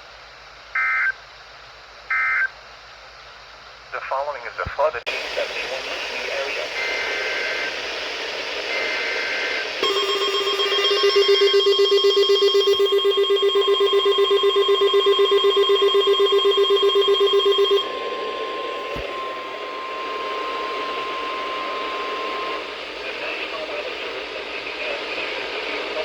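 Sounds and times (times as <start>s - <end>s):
fast-pulsing radio alarm: 5.1s - 24.3s
steady warning alarm tone: 8.6s - 22.8s
digital data burst: 9.8s - 17.8s.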